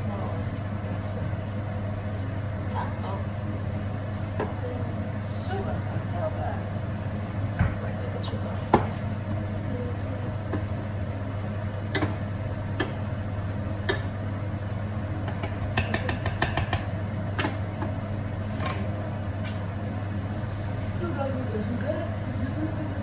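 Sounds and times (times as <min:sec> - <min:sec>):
steady low hum: 0:00.0 - 0:23.0
utensils tapping a pan: 0:15.3 - 0:17.6.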